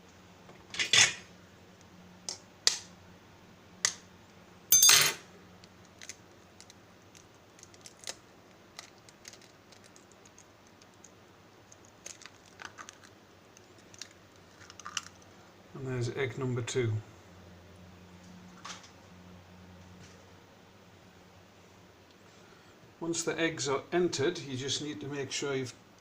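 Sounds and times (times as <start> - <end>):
egg cracking on plastic: 5.6 - 15.3
plastic parts clacking: 5.8 - 11.0, 11.7 - 15.2.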